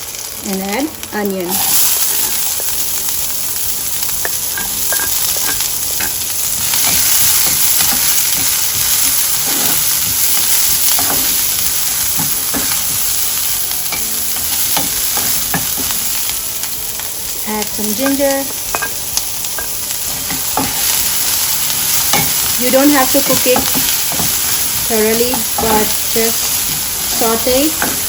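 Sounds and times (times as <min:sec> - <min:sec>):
onion sizzling in hot oil: 0:00.0 - 0:28.0.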